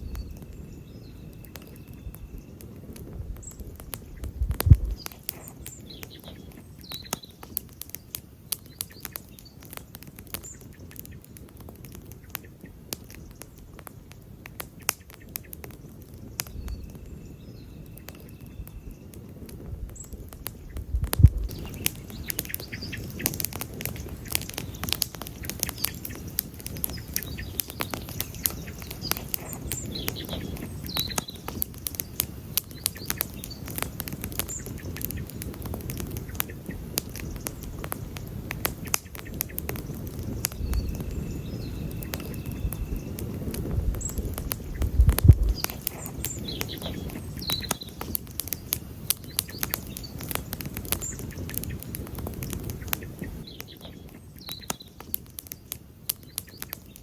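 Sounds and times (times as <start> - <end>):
faint bird chirps: 0.0 - 2.8, 3.4 - 13.7, 15.0 - 51.9
campfire crackling and popping: 0.0 - 57.0
low rumble: 20.8 - 21.6.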